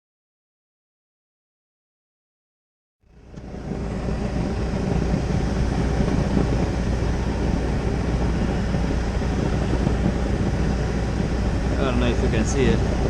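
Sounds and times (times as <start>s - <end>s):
gas burners rumbling with hiss: 3.1s - 13.0s.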